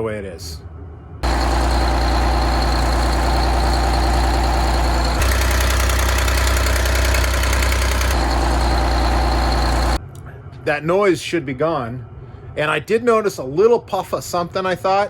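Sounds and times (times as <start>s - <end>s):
diesel engine idling: 1.2s - 10.0s.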